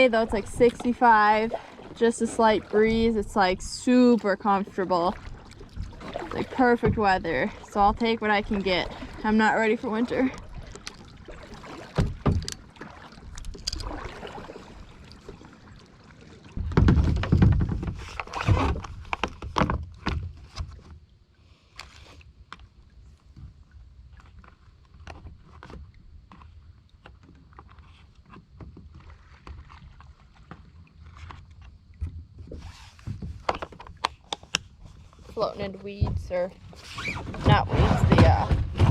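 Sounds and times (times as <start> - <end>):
water drips: 0.0 - 16.4
paddle knocking against hull: 0.0 - 20.9, 25.0 - 38.9
paddle splashes: 0.0 - 38.9.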